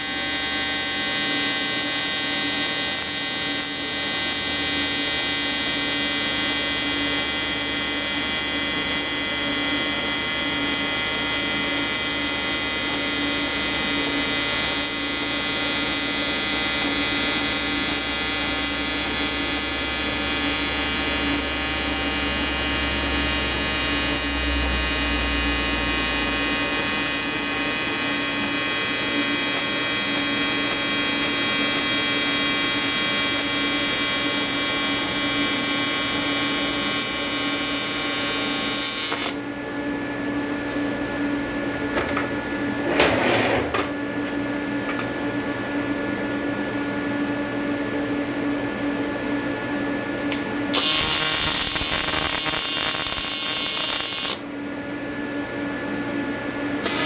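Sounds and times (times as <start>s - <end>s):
welding arc buzzing: 0.0s - 39.5s, 50.7s - 54.5s.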